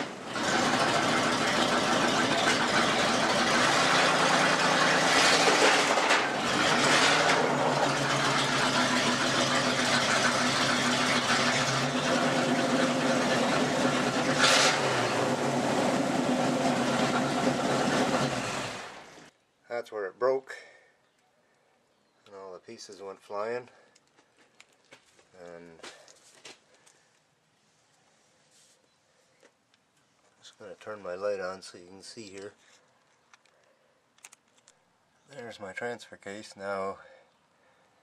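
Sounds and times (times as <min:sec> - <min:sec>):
truck engine running: 0:00.0 - 0:19.3.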